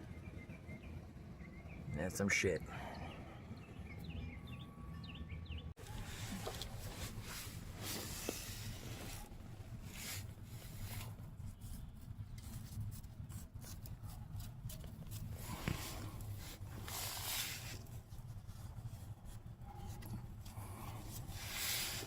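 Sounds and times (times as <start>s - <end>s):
rubbing and scraping handling noise: 5.8s - 22.0s.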